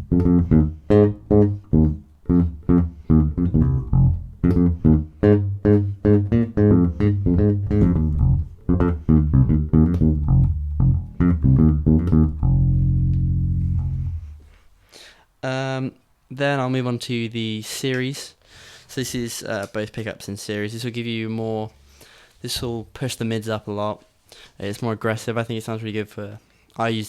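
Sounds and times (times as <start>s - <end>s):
slap bass funk line: 0.0s - 14.4s.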